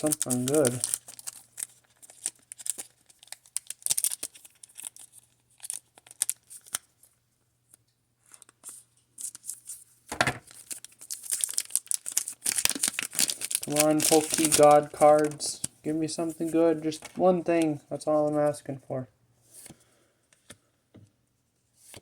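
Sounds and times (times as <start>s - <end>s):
foil wrapper tearing and crinkling: 0.0s - 6.9s, 8.4s - 9.8s, 10.4s - 15.7s.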